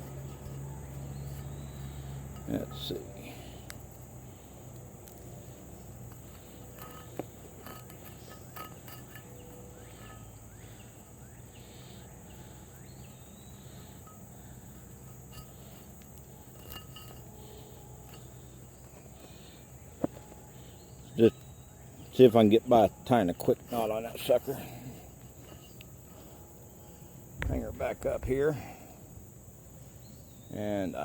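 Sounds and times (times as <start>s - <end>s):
insect chorus: 0.0s - 31.0s
handling clicks and knocks: 5.9s - 10.6s.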